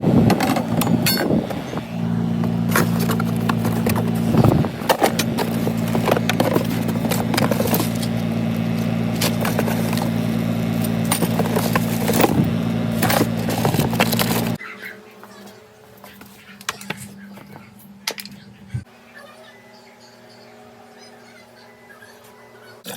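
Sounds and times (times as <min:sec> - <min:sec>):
low mechanical hum: 0:00.0 - 0:22.9
clicks and scrapes: 0:02.7 - 0:14.6.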